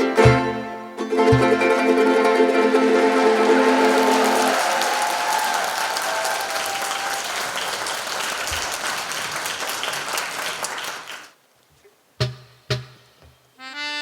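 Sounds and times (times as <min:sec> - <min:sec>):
choir and ukuleles chord: 0:00.0 - 0:04.4
audience applause: 0:02.6 - 0:11.4.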